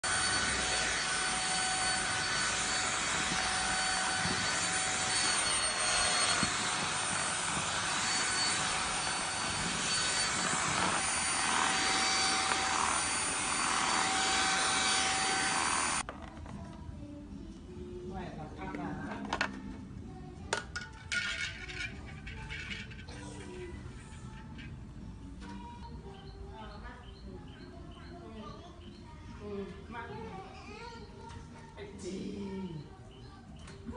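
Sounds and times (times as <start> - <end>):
vacuum cleaner motor whine: 0.0 - 16.1.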